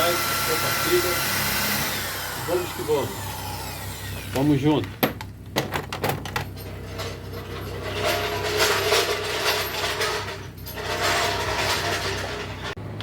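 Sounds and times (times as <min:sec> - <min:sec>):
ratcheting and mechanical clatter: 0:05.0 - 0:12.8.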